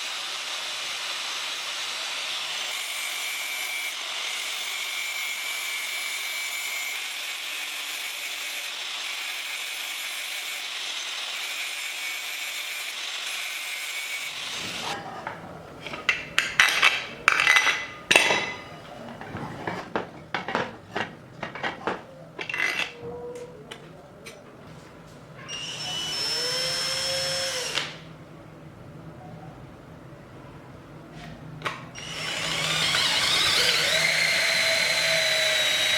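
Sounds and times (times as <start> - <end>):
power tool grinding: 0.0 - 15.1, 19.4 - 23.0, 31.6 - 35.9
knocks and scrapes of handling: 14.6 - 25.3.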